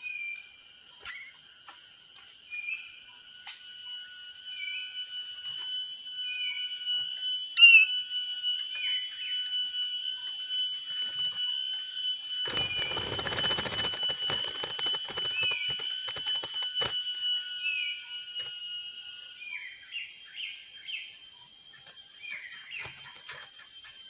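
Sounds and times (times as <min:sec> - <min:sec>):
high-pitched drone: 0:00.0 - 0:23.4
lower steady tone: 0:00.0 - 0:24.0
loud burst of noise: 0:12.4 - 0:17.0.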